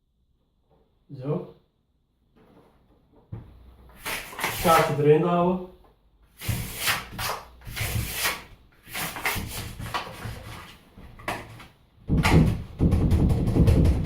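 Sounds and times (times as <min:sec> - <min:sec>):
plastic card scraping door gap: 0:04.0 - 0:05.0, 0:06.4 - 0:11.7.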